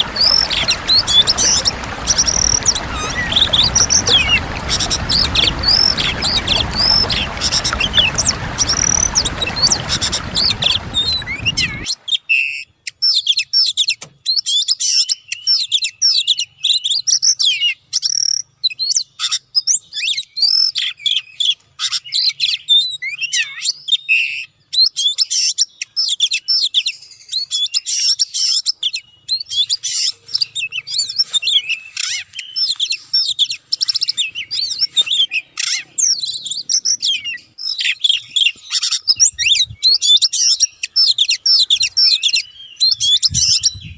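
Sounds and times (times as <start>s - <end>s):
bird singing: 0.0s - 11.9s.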